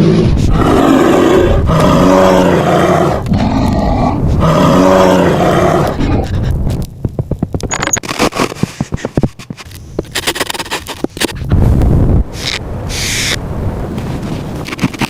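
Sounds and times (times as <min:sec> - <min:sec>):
tiger roaring: 0:00.0 - 0:06.4
rough pulsing growl: 0:00.0 - 0:06.6.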